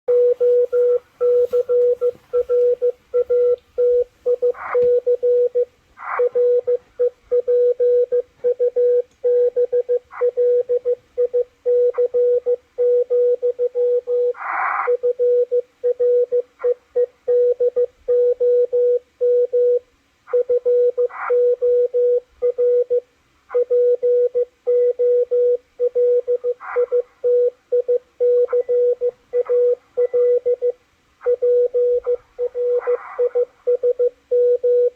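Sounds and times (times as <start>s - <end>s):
radio noise crackles: 0.1s - 6.9s
morse code beeps: 0.1s - 23.0s, 23.6s - 34.9s.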